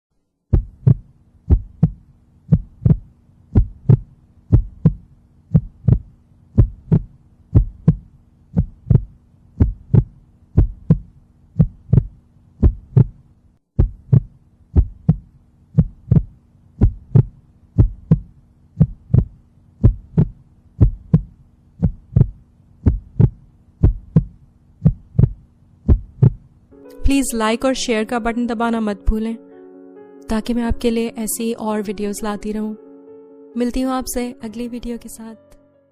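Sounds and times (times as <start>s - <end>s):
faint low hum: 0.2s - 29.4s
heartbeat double thump: 0.5s - 13.2s, 13.8s - 26.4s.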